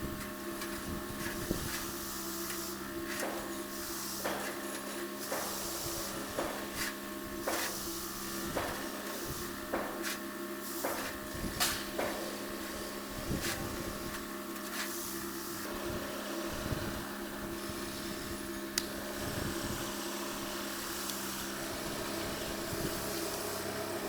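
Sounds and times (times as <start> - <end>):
machine humming: 15.4 - 24.0.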